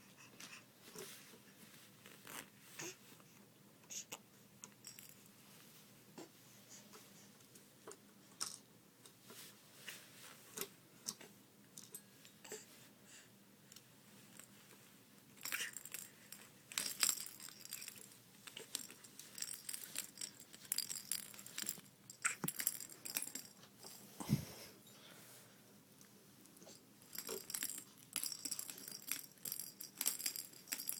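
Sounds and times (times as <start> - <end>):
metal objects jingling and clattering: 15.4 - 23.7, 26.7 - 30.9.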